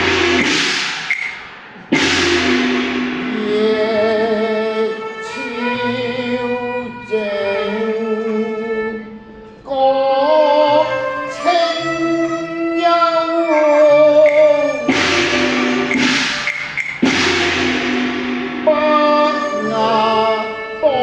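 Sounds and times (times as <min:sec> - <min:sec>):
percussion crash: 0:00.0 - 0:04.8, 0:14.3 - 0:20.5
opera ensemble music: 0:00.0 - 0:21.0.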